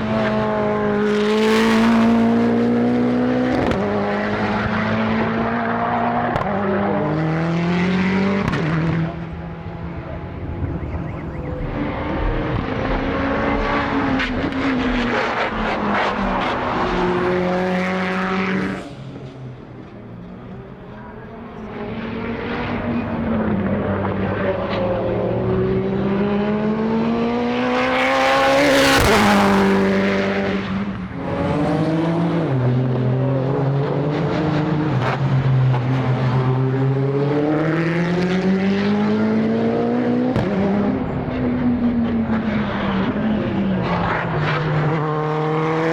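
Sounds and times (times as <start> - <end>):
race car engines: 0.0 - 45.9
car passing by: 1.1 - 33.0.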